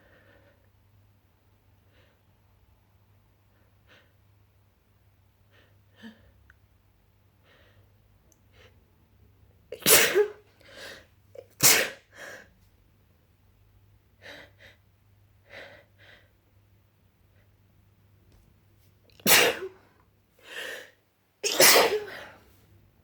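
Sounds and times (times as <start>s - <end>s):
person sneezing: 9.8s - 10.4s, 11.4s - 12.1s, 19.2s - 19.8s, 21.4s - 22.4s.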